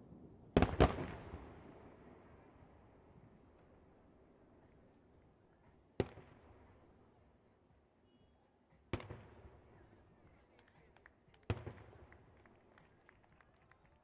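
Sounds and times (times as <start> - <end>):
faint firework crackling: 0.0 - 14.0
firework bursts with echo: 0.6 - 2.9.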